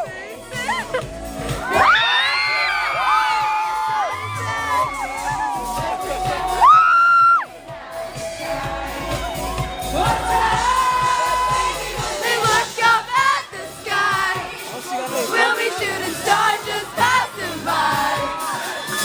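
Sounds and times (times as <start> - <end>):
crowd: 0.0 - 19.0
woman singing with band: 8.1 - 18.8.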